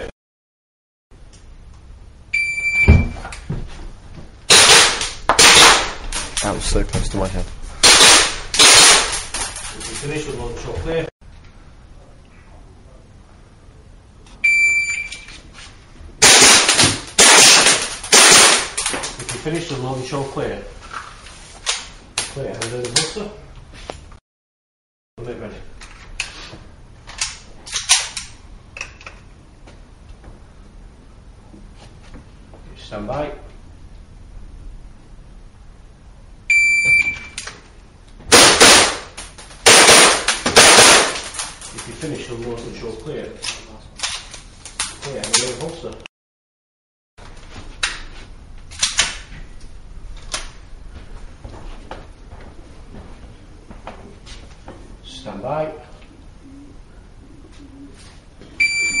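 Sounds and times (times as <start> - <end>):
shot timer beep: 2.4 - 3.2, 14.4 - 15.3, 36.5 - 37.4, 58.6 - 59.0
pistol shots: 38.3 - 41.2.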